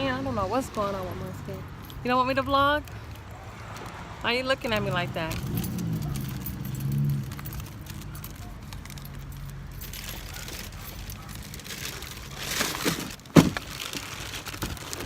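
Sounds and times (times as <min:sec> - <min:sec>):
rustling: 0:05.2 - 0:15.0.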